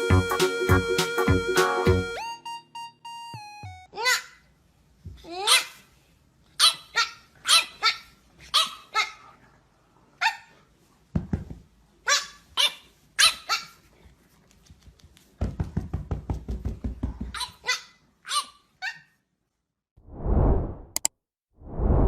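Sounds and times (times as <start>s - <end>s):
dog barking: 6.6s - 8.0s.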